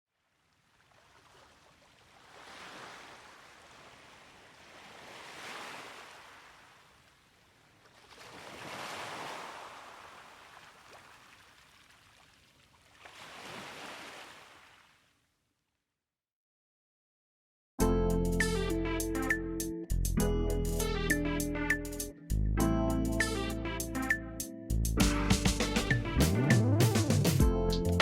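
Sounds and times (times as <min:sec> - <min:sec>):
sea waves washing in: 0:00.8 - 0:11.9, 0:13.0 - 0:14.8.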